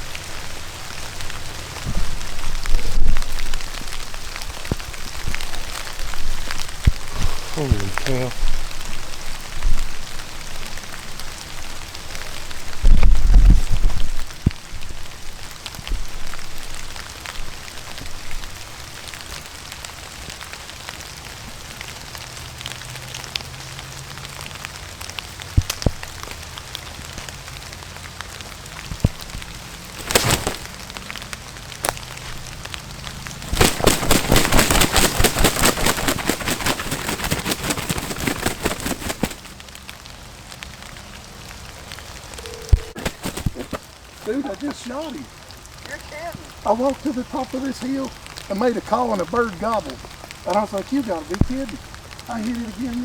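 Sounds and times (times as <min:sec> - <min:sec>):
bird thrashing in leaves: 0:00.0 - 0:15.0, 0:29.1 - 0:31.0, 0:31.7 - 0:39.6, 0:42.4 - 0:45.1.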